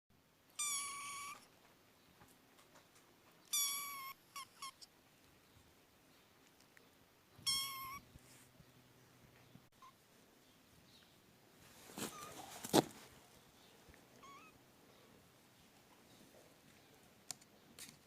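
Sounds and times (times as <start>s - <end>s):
cat chirps: 0.6s - 1.5s, 3.4s - 4.9s, 7.4s - 8.0s, 14.2s - 14.6s
cat meowing: 0.6s - 1.5s, 3.5s - 4.8s, 7.4s - 8.0s, 14.2s - 14.6s.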